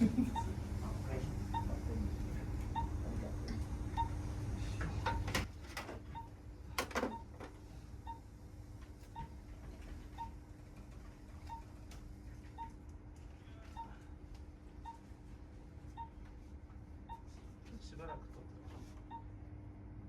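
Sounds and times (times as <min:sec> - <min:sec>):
steady low hum: 0:00.0 - 0:20.0
patient monitor pulse beeps: 0:00.1 - 0:03.3, 0:03.9 - 0:05.3, 0:06.1 - 0:07.4, 0:08.0 - 0:08.3, 0:09.0 - 0:09.4, 0:10.1 - 0:10.4, 0:11.4 - 0:11.8, 0:12.4 - 0:12.8, 0:13.6 - 0:14.1, 0:14.8 - 0:15.2, 0:15.9 - 0:19.3.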